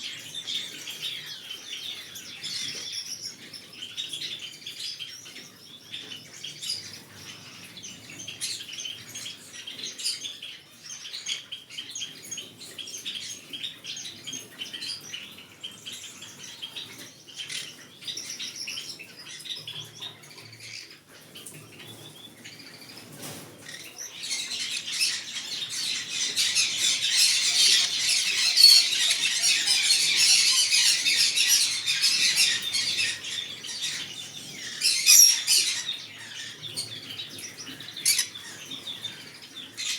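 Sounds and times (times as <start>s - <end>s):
parrot chirping and chattering: 24.1s - 36.9s, 37.8s - 38.7s.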